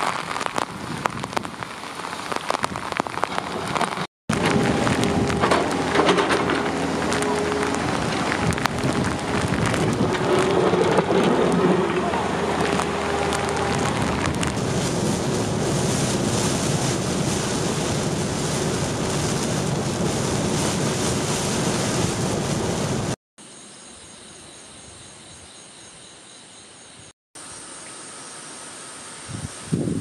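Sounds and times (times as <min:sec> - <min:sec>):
wind and water rushing: 0:00.0 - 0:23.2, 0:28.7 - 0:30.0
pulsing insect chirp: 0:23.4 - 0:29.3.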